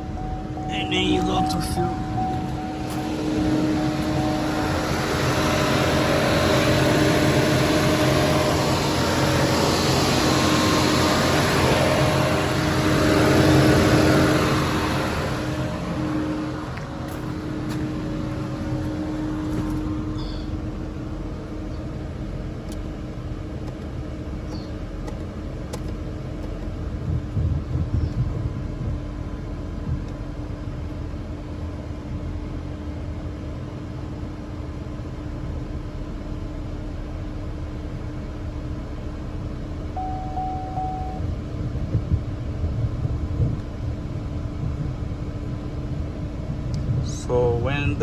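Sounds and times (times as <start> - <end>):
heater blower air rush: 0.0 - 22.4
car engine idling: 0.0 - 33.6, 34.8 - 48.0.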